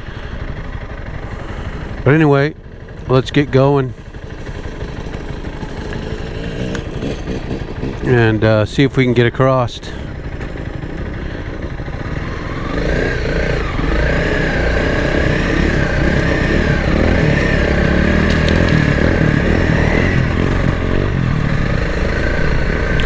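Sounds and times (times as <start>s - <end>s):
motorcycle engine pulling away: 0.0s - 23.0s
wavering whine: 12.0s - 23.0s.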